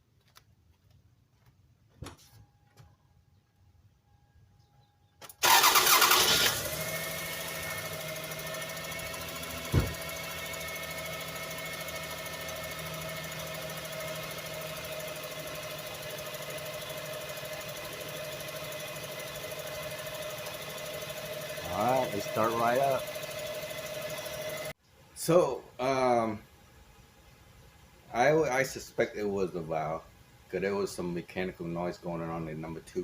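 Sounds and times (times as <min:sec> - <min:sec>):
car engine starting and idling: 0:05.2 - 0:24.8
sharp knock: 0:09.7 - 0:10.0.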